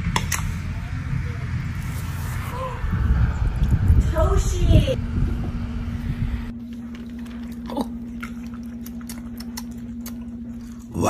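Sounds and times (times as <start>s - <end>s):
steady low hum: 0.0s - 11.0s
animal chewing: 6.6s - 11.0s.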